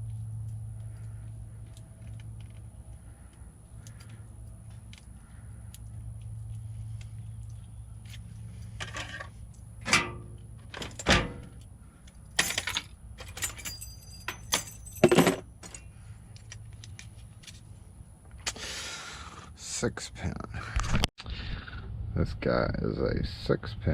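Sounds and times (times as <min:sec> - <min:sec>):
low steady hum: 0:00.0 - 0:18.3
keys and lock parts clinking: 0:08.6 - 0:16.8.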